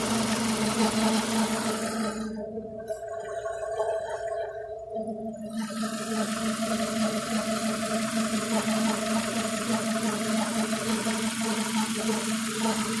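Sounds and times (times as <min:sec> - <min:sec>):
car engine idling: 0:00.0 - 0:02.2, 0:05.9 - 0:13.0.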